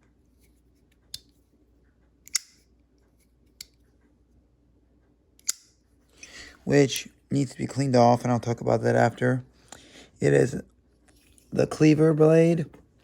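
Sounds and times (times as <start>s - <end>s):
knife sharp clicks: 2.3s - 2.6s, 5.4s - 5.7s.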